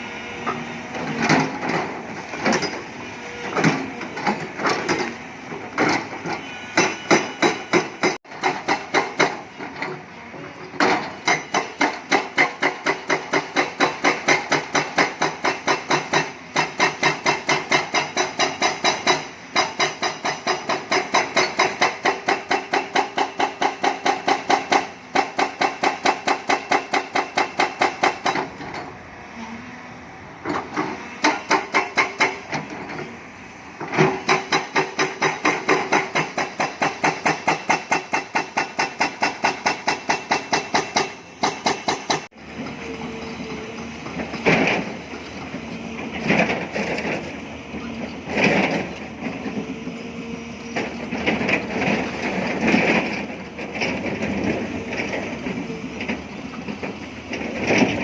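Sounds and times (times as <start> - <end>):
excavator metallic impacts on rock: 5.7 - 10.0, 10.7 - 28.8, 30.5 - 33.0, 33.8 - 42.3.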